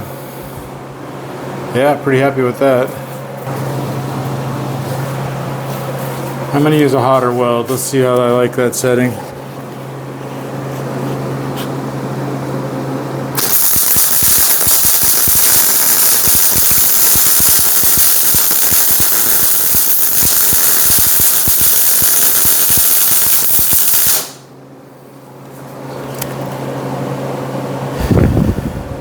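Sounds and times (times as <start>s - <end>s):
steady low hum: 0.0s - 29.0s
welding arc crackling: 13.3s - 24.5s.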